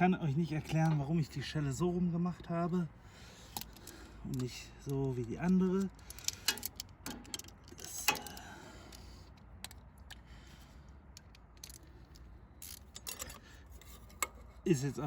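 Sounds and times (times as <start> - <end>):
metallic clicks of hand tools: 3.5 - 10.2, 11.1 - 14.4.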